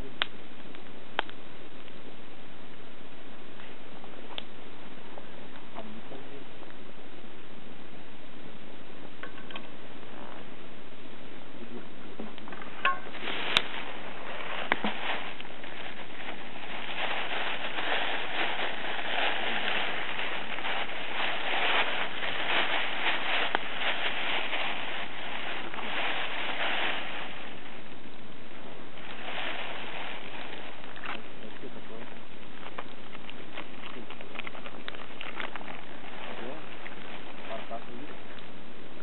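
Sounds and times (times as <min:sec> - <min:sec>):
fire pops: 0:00.0 - 0:02.1, 0:03.5 - 0:04.6, 0:12.1 - 0:38.6
campfire crackling: 0:00.0 - 0:39.0
steady hiss: 0:00.0 - 0:39.0.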